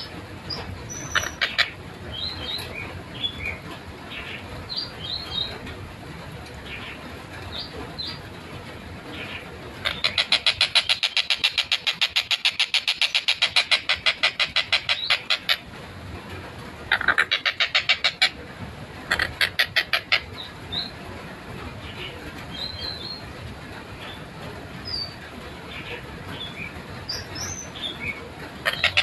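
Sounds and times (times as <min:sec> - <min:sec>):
kingfisher calling in rapid runs: 0:00.0 - 0:05.5, 0:09.1 - 0:15.7, 0:16.8 - 0:18.4, 0:19.0 - 0:21.0, 0:24.8 - 0:29.0.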